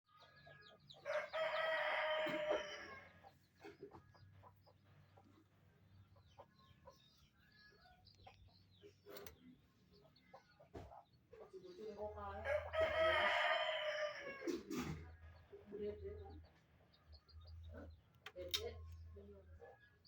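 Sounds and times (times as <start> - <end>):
chicken clucks: 0.1 - 11.9
rooster crowing: 1.0 - 3.1, 12.5 - 14.6.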